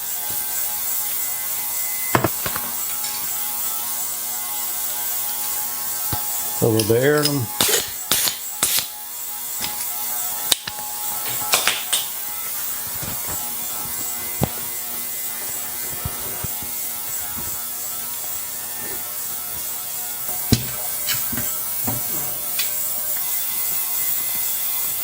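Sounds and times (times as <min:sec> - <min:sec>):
bicycle parts clicking and knocking: 0:02.1 - 0:03.2.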